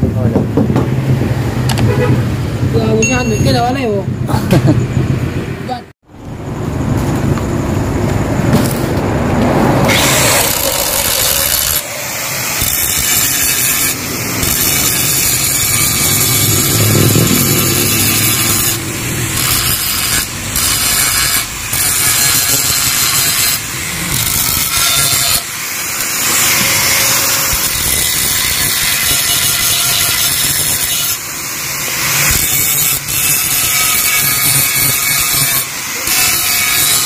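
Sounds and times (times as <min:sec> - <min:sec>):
power tool grinding steel: 0:09.8 - 0:37.0.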